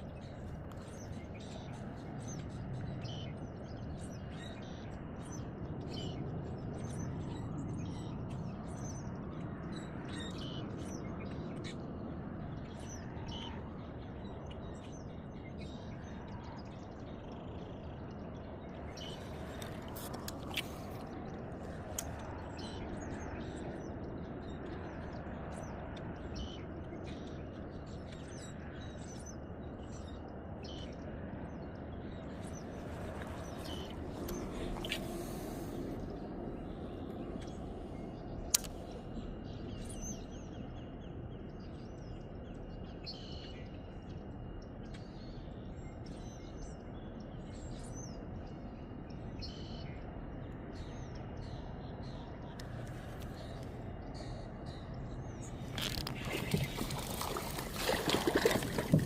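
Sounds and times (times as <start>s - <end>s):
small birds chirping: 17.0s - 25.7s, 31.6s - 48.6s, 50.8s - 59.0s.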